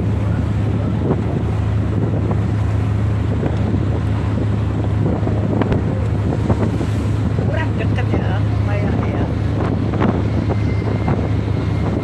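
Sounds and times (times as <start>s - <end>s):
ship engine drone: 0.0s - 12.0s
wind rushing over microphone: 0.0s - 12.0s.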